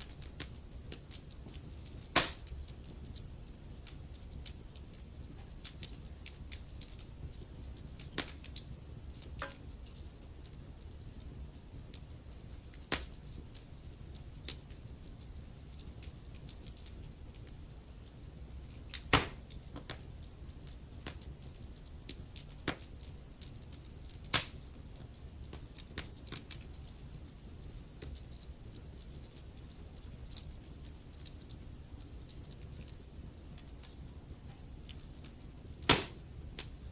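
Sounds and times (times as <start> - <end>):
wood fire crackling: 0.0 - 36.9.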